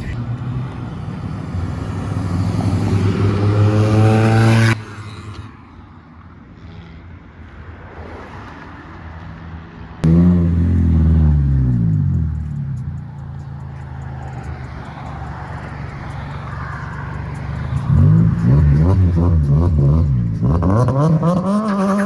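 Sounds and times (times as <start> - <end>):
car accelerating past: 0.0 - 5.4
car engine revving: 0.0 - 5.4, 10.0 - 22.0.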